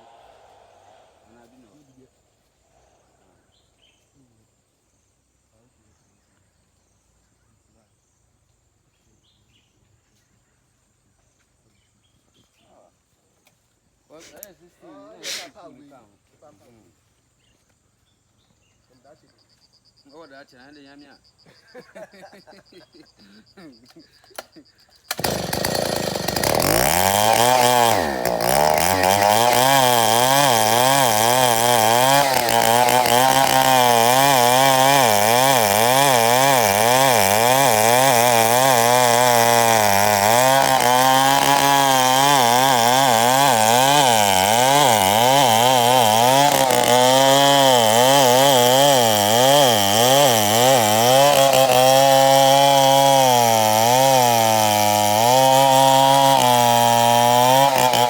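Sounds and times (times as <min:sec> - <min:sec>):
chainsaw cutting wood: 0:25.1 - 0:58.0.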